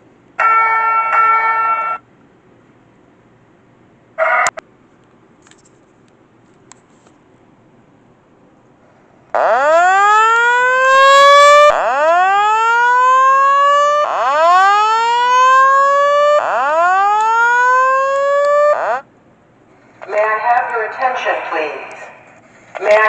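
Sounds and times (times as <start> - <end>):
fire alarm whoop tone: 0.4 - 2.0, 9.4 - 19.0.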